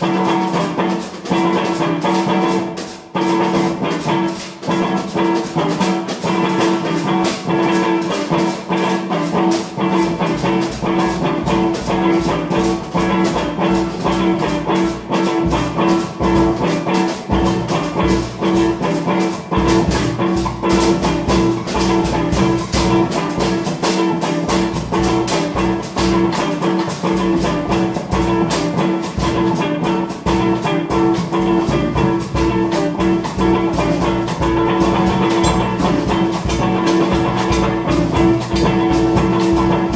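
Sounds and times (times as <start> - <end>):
fast drum kit pattern: 0.0 - 39.9
guitar sustaining a note: 30.8 - 39.9.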